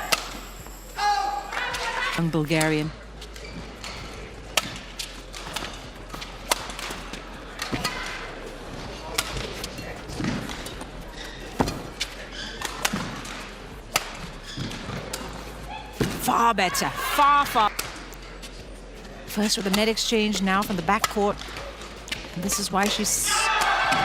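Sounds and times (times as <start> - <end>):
rackets hitting shuttlecock: 3.2 - 16.4, 17.0 - 18.2, 20.6 - 24.0.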